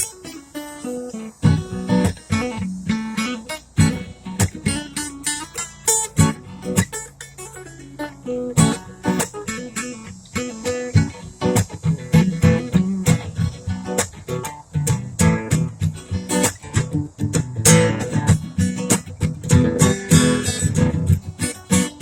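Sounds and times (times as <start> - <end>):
acoustic guitar strumming: 0.0 - 22.0.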